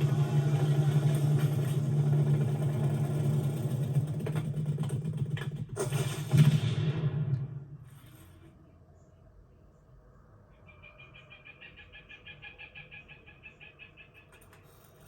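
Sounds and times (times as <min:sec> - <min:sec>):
knocks and clatters: 0:00.0 - 0:08.5.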